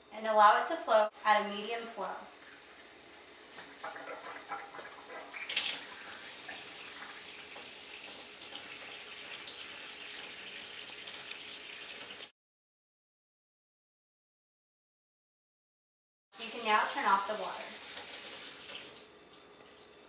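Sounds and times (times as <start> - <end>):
tap water running into sink: 3.5 - 12.3, 16.4 - 20.0.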